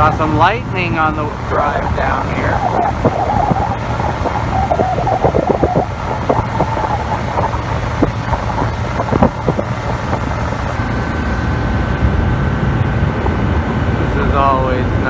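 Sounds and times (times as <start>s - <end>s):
rushing water: 0.0s - 10.8s
motorboat engine drone: 0.0s - 15.0s
wind buffeting microphone: 0.0s - 15.0s.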